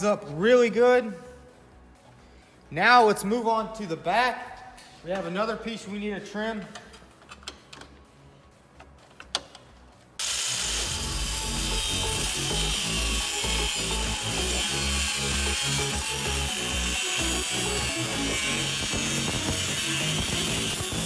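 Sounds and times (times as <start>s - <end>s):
power tool cutting metal: 10.2s - 21.0s.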